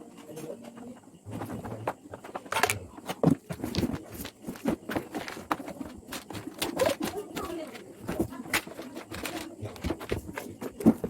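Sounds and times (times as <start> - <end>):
handling clicks and knocks: 2.0 - 11.0
packaging rustling: 3.2 - 11.0.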